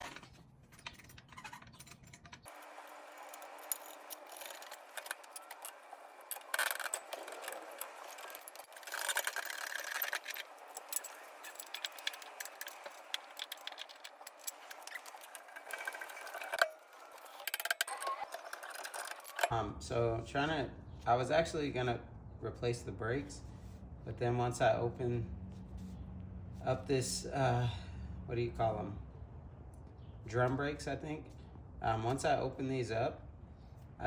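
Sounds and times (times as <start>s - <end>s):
small metal tools clinking: 0.0s - 19.5s.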